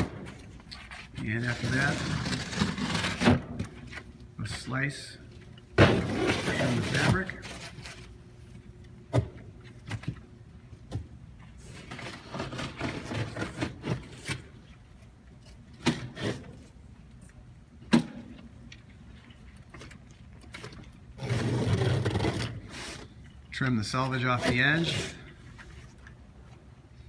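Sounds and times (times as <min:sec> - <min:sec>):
scraping: 0:00.1 - 0:04.0.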